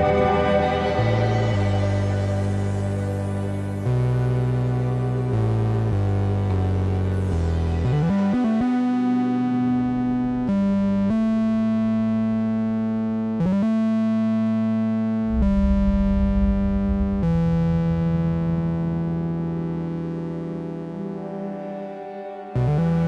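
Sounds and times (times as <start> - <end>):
low bass tone: 0.0 - 8.4, 9.4 - 13.6, 15.2 - 20.0
sustained synth chords: 0.0 - 22.0.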